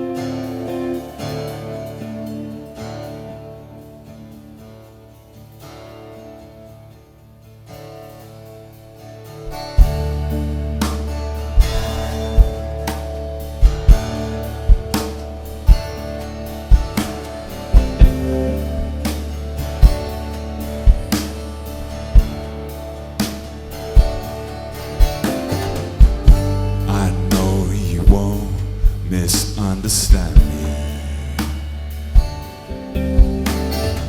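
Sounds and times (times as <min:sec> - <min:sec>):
rock band playing: 0:00.0 - 0:04.6, 0:09.3 - 0:34.0
kick-drum hits: 0:25.0 - 0:26.6.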